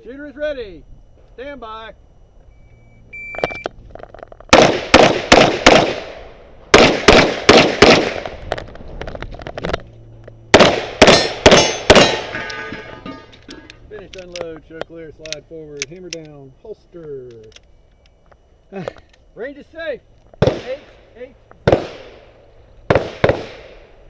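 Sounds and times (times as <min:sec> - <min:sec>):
shot timer beep: 0:02.5 - 0:03.7
handgun shots: 0:10.6 - 0:12.4.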